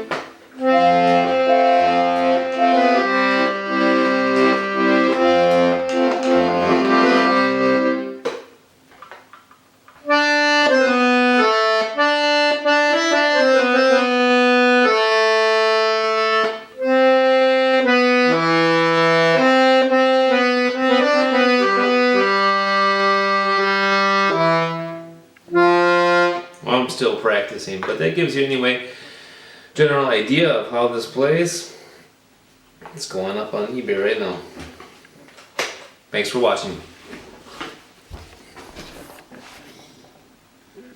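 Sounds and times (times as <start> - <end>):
button accordion melody: 0.0 - 8.4, 10.0 - 26.9.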